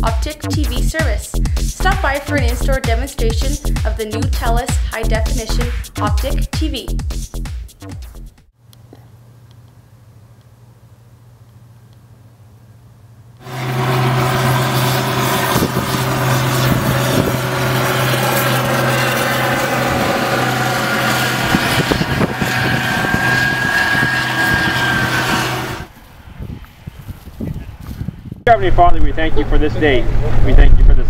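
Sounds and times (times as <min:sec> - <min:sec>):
combine harvester running: 0:13.4 - 0:26.0.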